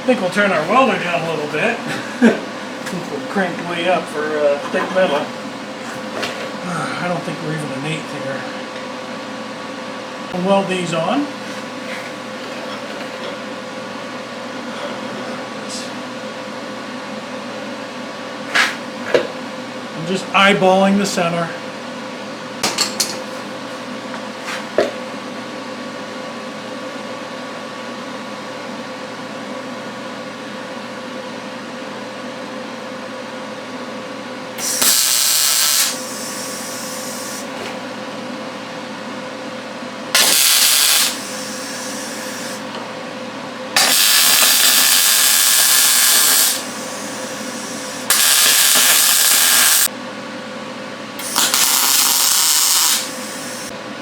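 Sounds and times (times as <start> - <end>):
welder steady hum: 0.0 - 16.4, 34.6 - 38.6, 40.0 - 49.9, 51.2 - 53.9
welding arc hiss and crackle: 34.6 - 37.6, 40.2 - 42.7, 43.8 - 49.9, 51.2 - 53.7.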